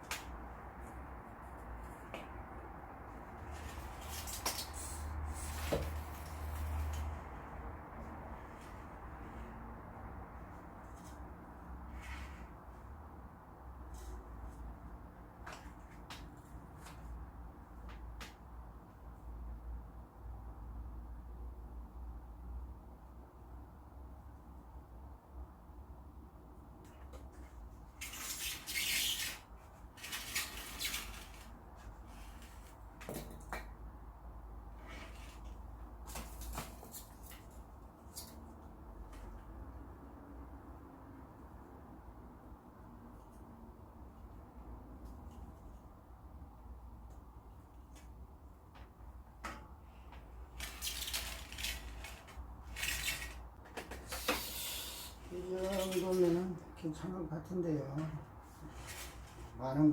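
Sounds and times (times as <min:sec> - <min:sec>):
materials rustling and scraping: 0:00.0 - 0:09.7, 0:27.2 - 0:33.1, 0:34.7 - 0:39.4, 0:48.8 - 0:56.6, 0:58.0 - 0:59.6.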